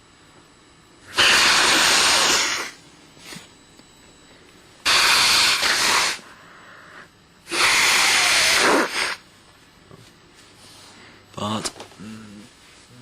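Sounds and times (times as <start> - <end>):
person blowing nose: 1.1 - 2.8, 4.9 - 6.3, 7.5 - 9.2.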